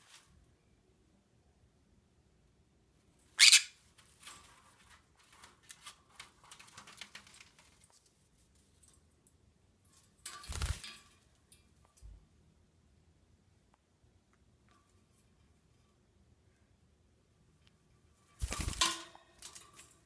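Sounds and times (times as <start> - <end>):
parrot scratchy clicks and rustles: 3.8 - 9.1, 18.4 - 20.0.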